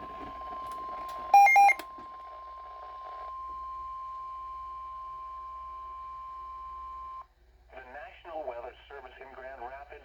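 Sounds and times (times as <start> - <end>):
short electronic beeps: 1.4 - 1.8.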